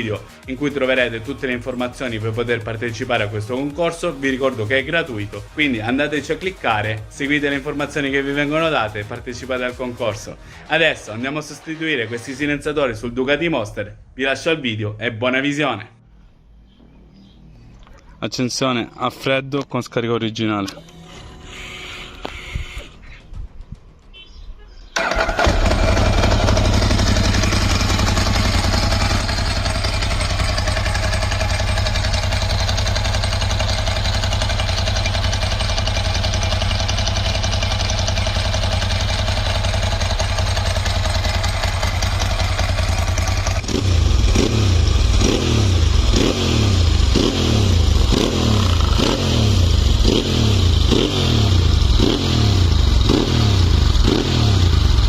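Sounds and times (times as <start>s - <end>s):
motorcycle engine idling: 25.0s - 55.0s.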